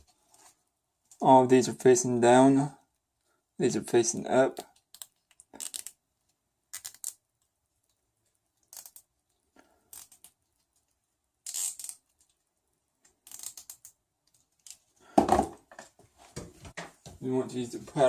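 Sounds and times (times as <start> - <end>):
zip ties zipping: 4.9 - 6.0, 6.7 - 7.2, 8.6 - 9.1, 9.8 - 10.4, 11.4 - 12.1, 13.2 - 14.0.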